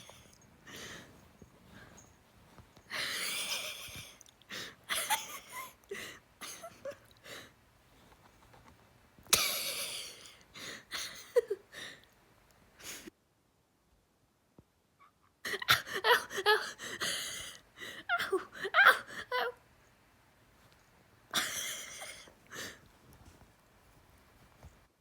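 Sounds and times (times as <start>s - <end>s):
wheezing gasps and snorts: 21.4s - 22.9s.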